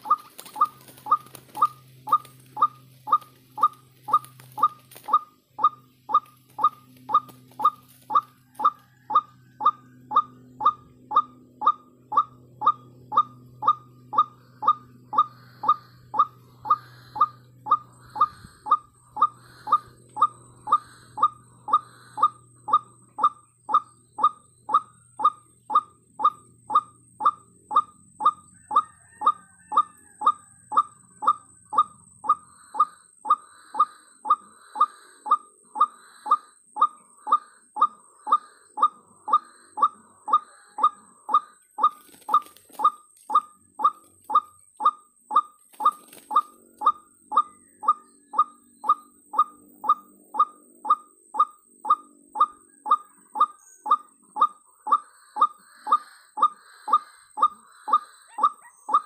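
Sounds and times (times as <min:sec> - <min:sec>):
bird calling repeated note: 0:00.0 - 0:59.0.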